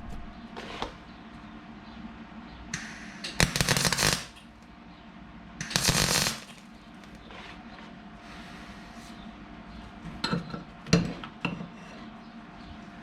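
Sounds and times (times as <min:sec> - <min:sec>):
welder arc crackling: 0:02.8 - 0:04.7, 0:05.6 - 0:07.2.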